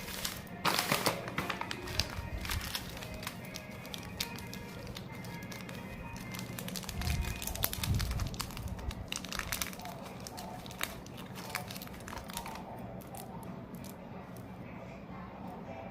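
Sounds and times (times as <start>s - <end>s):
wrapper crinkling: 0.0s - 14.0s.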